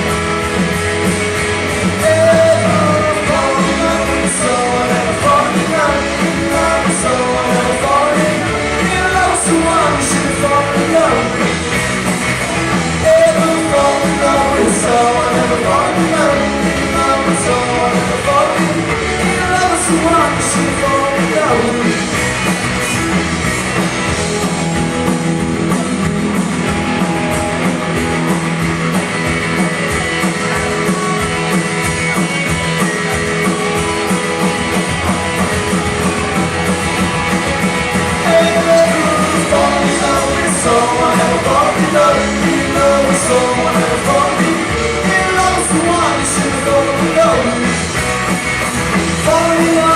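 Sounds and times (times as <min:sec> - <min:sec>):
live rock band playing: 0:00.0 - 0:49.9
lead vocals singing: 0:01.8 - 0:22.3, 0:34.4 - 0:48.2, 0:49.0 - 0:49.9.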